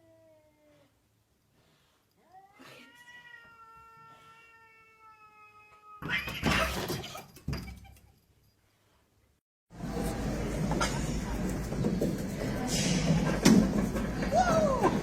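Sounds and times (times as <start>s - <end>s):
cat meowing: 2.2s - 6.4s.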